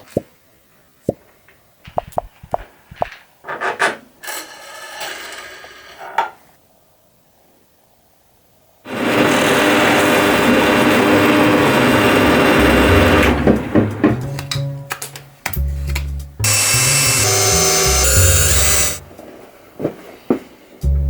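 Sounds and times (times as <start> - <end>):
scroll saw running: 8.9 - 13.4, 16.4 - 19.1.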